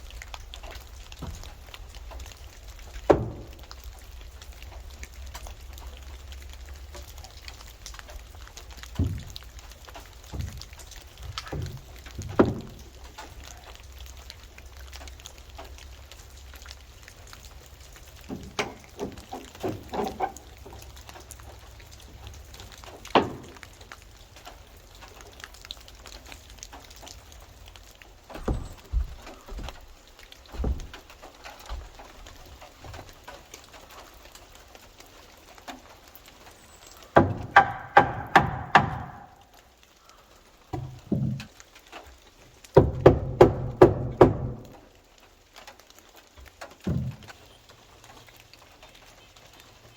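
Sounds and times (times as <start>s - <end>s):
faint crackling hiss: 0.0s - 37.2s, 39.2s - 42.7s
knocks and taps: 8.9s - 13.2s, 28.4s - 29.9s, 30.5s - 32.0s, 37.2s - 39.4s, 40.7s - 41.5s, 42.8s - 44.8s.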